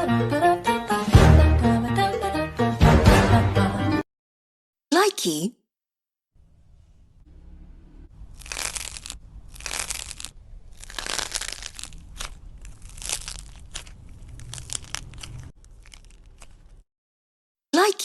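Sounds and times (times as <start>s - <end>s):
slime crackling and crunching: 8.3s - 16.8s.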